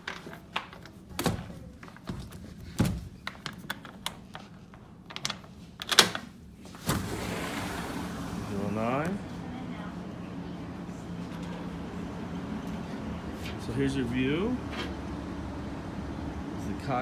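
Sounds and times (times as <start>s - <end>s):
sliding door opening: 5.9s - 16.6s
outdoor noise rushing: 6.8s - 17.0s.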